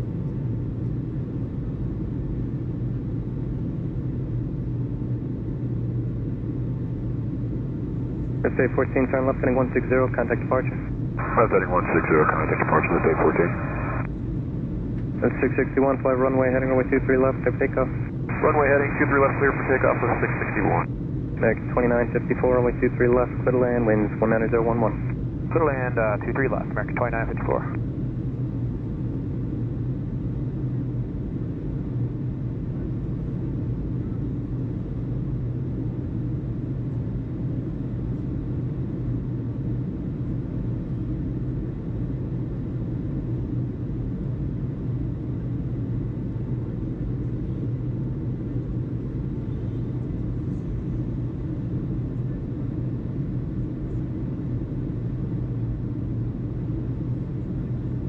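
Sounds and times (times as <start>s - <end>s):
constant hum: 0.0s - 58.0s
low rumble: 8.4s - 14.1s, 15.0s - 27.8s.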